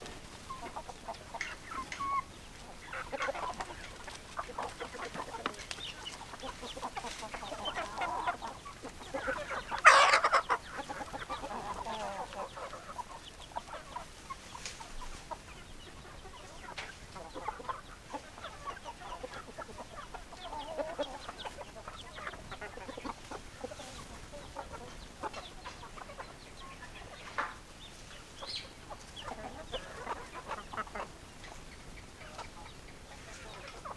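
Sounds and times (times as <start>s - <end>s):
chickens clucking: 0.0s - 33.9s.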